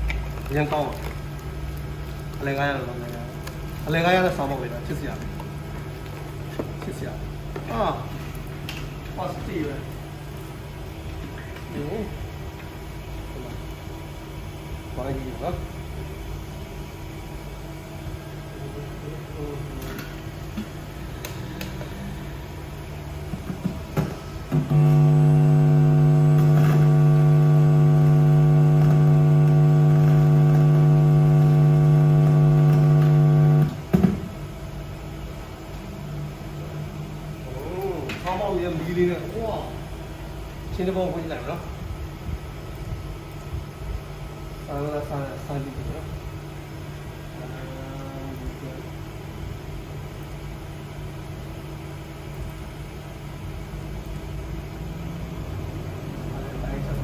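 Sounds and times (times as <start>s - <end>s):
low electronic buzz from speaker: 24.5s - 34.0s
low hum: 24.6s - 33.9s.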